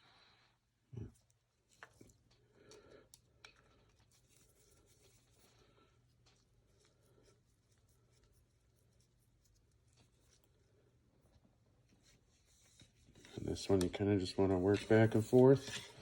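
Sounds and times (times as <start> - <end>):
scratchy rubbing on rifle parts: 3.2 - 16.0.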